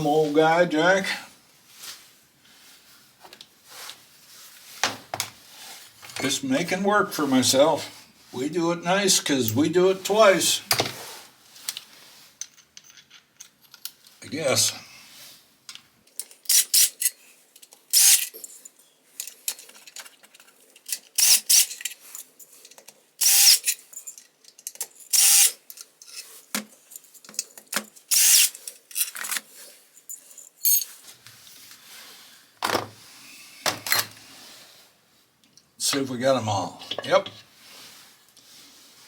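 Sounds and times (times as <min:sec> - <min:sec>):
metallic clattering of tools: 0:30.0 - 0:31.0.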